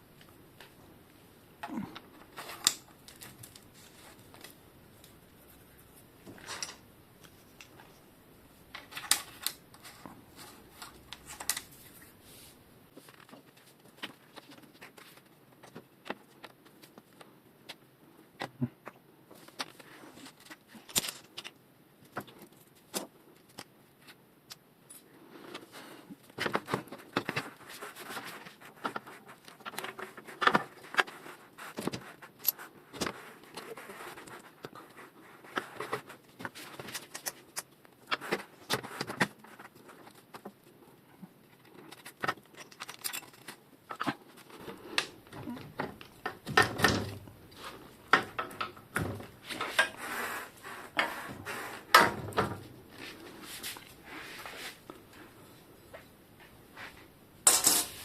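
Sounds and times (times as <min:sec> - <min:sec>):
small metal parts clinking: 0:42.5 - 0:43.6.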